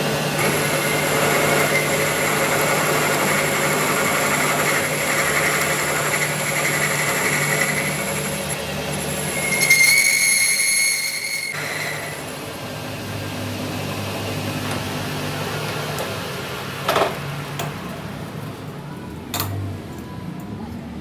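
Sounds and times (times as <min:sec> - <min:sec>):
lathe motor humming: 0:00.0 - 0:18.6
cutting tool squealing on steel: 0:04.1 - 0:12.2.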